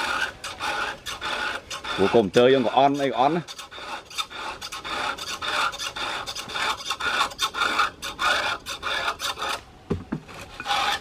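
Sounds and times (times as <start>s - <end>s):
hand tool rasping: 0.0s - 9.6s, 10.4s - 11.0s
low knock: 9.9s - 10.3s.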